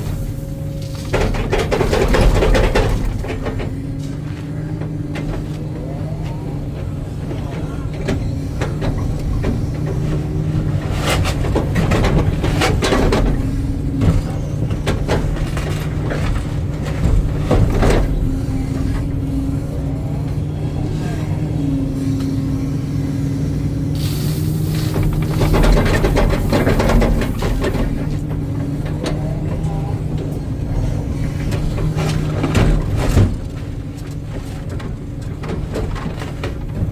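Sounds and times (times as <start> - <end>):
hydraulic whine: 0.0 - 34.0
excavator diesel engine running: 0.0 - 36.9
bucket rattling and scraping: 24.0 - 36.9.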